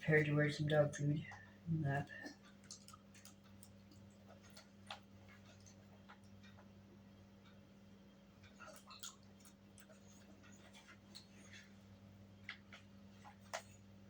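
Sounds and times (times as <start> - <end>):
low electrical hum: 0.0 - 14.0
dog eating: 2.1 - 6.4, 8.4 - 11.8.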